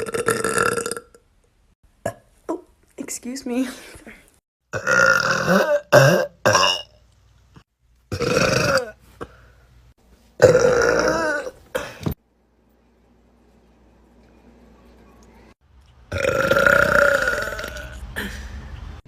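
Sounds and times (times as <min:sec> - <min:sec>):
woman burping loudly: 0:00.0 - 0:01.2, 0:04.7 - 0:07.0, 0:08.1 - 0:09.0, 0:10.4 - 0:12.2, 0:16.1 - 0:18.3.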